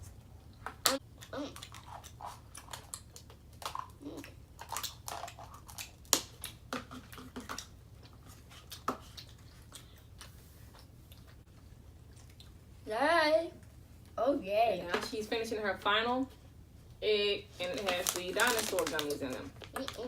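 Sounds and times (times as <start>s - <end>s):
person chewing candy: 0.9s - 12.6s
rustling: 17.5s - 20.0s.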